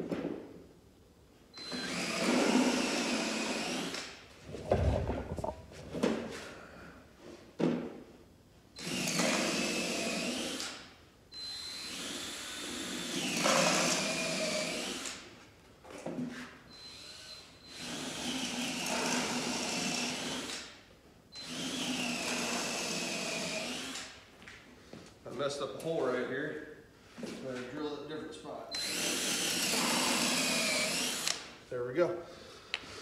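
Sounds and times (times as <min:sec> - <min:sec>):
electric drill drilling wood: 0:08.8 - 0:10.8, 0:16.9 - 0:20.6, 0:21.4 - 0:24.1, 0:28.8 - 0:31.4.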